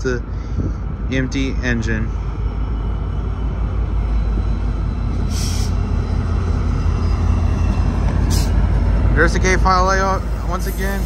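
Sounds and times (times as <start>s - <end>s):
diesel locomotive engine: 0.0s - 11.0s
air hiss: 5.3s - 5.8s.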